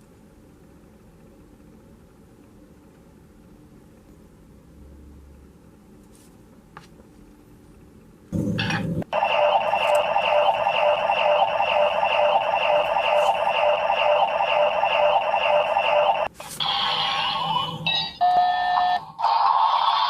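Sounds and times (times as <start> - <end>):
electronic effect with steady tone: 8.4 - 18.2
alarm-like electronic beeping: 9.1 - 19.1.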